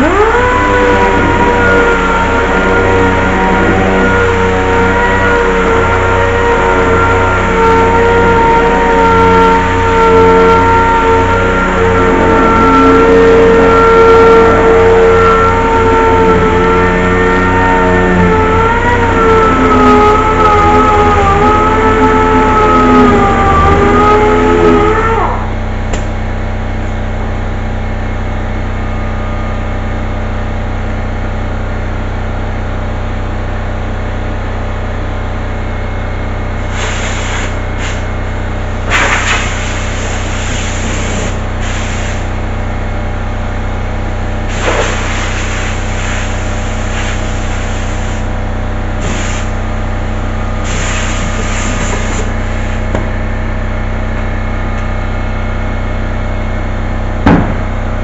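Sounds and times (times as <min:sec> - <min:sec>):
steady machine hum: 0:00.0 - 0:58.0
compressed air hisses: 0:36.7 - 0:38.0, 0:38.9 - 0:42.2, 0:44.5 - 0:48.2, 0:49.0 - 0:49.5, 0:50.6 - 0:52.6.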